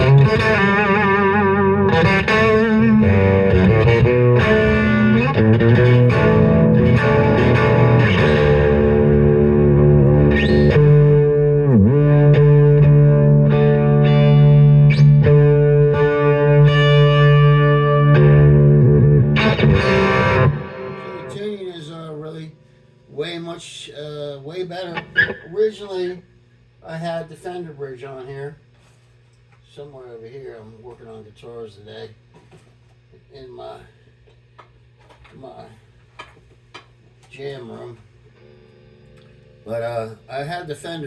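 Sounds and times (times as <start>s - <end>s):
distorted electric guitar with vibrato: 0.0s - 21.9s, 24.8s - 25.6s.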